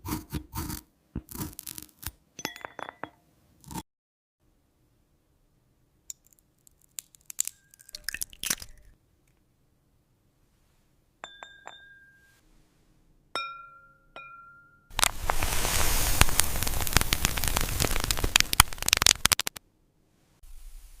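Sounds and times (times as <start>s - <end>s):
glass clicks and crackles: 1.6s - 3.2s, 6.1s - 9.0s, 16.2s - 19.6s
ringing glass taps: 2.4s - 3.2s, 11.2s - 12.4s, 13.4s - 14.9s.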